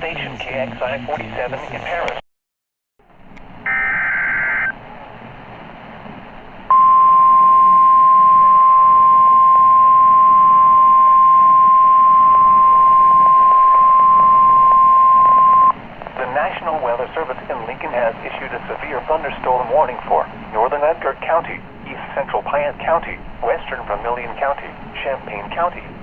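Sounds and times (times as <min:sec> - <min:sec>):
radio hiss: 0:00.0 - 0:02.2, 0:15.3 - 0:26.0
single-pitch warning alarm tone: 0:03.6 - 0:04.8, 0:06.7 - 0:15.7
warbling data tones: 0:03.6 - 0:04.8, 0:06.7 - 0:15.8.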